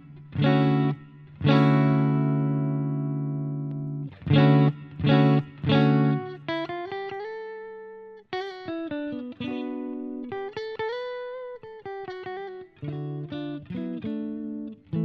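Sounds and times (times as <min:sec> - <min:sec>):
clean electric guitar: 0:00.0 - 0:15.0.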